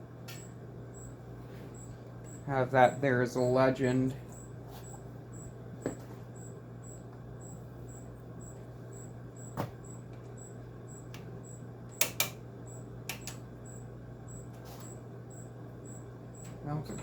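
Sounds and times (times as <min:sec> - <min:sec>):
steady low hum: 0:00.0 - 0:17.0
sharp clicks and knocks: 0:12.0 - 0:12.4, 0:13.1 - 0:13.4.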